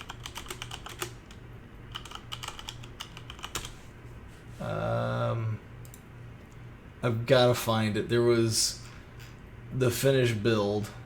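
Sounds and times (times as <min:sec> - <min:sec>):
typing on keyboard: 0:00.0 - 0:03.8.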